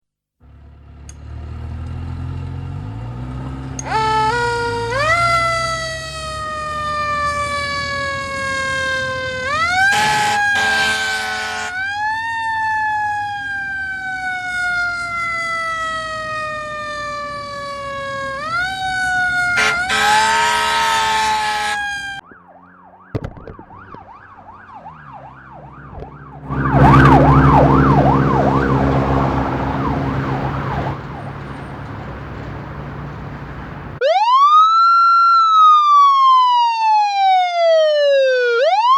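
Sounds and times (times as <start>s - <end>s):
air horn blasts: 3.8s - 5.9s, 7.7s - 12.1s, 18.2s - 22.2s, 26.4s - 32.6s
police siren yelp: 3.8s - 33.1s, 34.0s - 38.9s
fire truck siren wailing: 3.8s - 38.9s.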